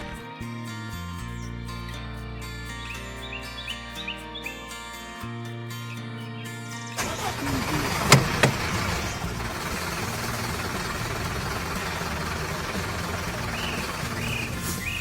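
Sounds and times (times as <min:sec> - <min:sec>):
heavy machine engine running: 0:07.2 - 0:14.9
sharp knocks: 0:08.1 - 0:08.7.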